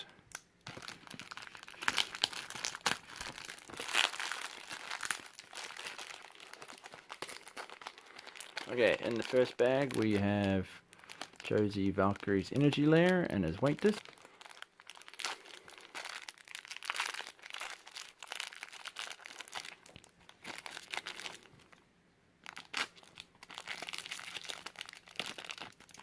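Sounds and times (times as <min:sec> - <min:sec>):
plastic bag crinkling: 0:00.0 - 0:21.8, 0:22.4 - 0:26.0.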